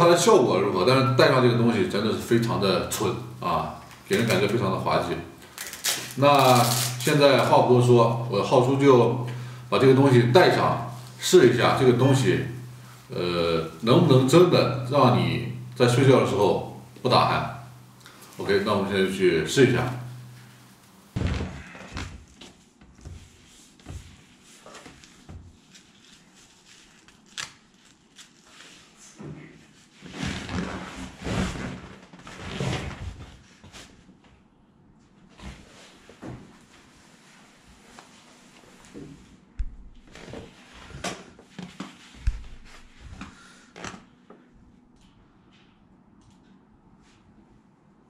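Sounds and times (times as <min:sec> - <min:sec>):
soft knocks and rustles: 0:21.2 - 0:25.7
knocks and light thumps: 0:39.6 - 0:40.1.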